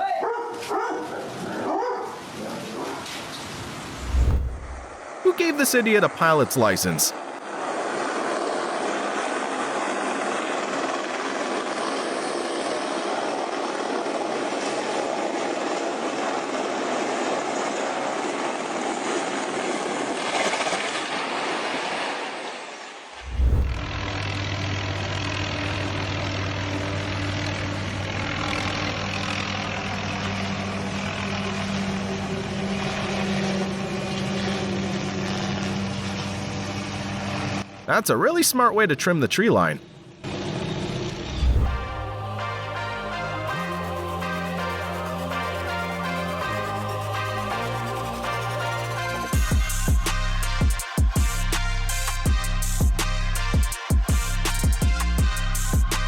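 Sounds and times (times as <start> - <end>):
helicopter rushing noise: 3.6 - 20.8, 23.2 - 45.2
helicopter engine and rotor hum: 5.6 - 20.8, 23.7 - 42.1.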